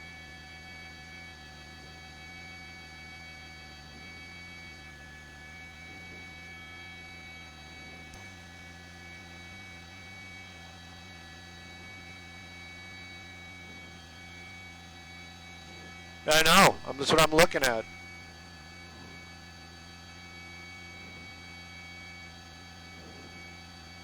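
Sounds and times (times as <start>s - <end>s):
helicopter hum through intercom: 16.3s - 17.8s.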